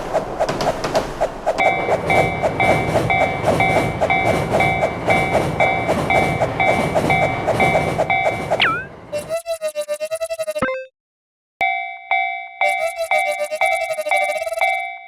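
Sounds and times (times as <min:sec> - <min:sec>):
quick falling glide: 0:00.0 - 0:10.6
crossing warning bells ringing: 0:01.6 - 0:09.1, 0:11.6 - 0:15.0.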